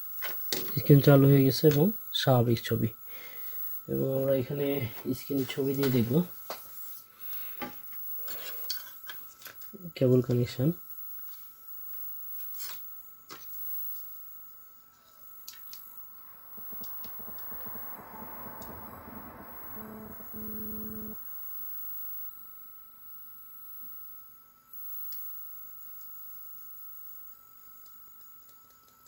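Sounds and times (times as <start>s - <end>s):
faint high-pitched whine: 0.0s - 27.9s
tv static hiss: 15.1s - 21.2s
short steady tone: 16.0s - 21.2s.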